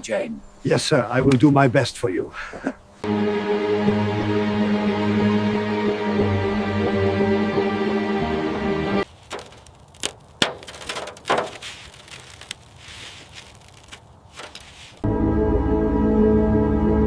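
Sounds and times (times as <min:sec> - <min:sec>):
music: 0:03.1 - 0:09.0, 0:15.0 - 0:17.0
sharp knocks cracks and clanks: 0:09.0 - 0:15.0.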